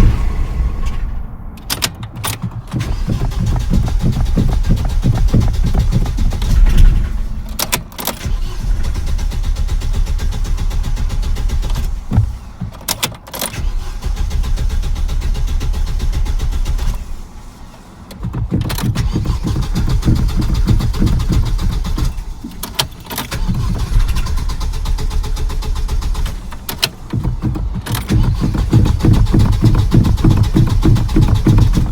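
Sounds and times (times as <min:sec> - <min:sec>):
car engine cranking on starter: 0:00.0 - 0:31.9
starter clicks: 0:01.6 - 0:08.6, 0:11.6 - 0:13.9, 0:18.1 - 0:31.9.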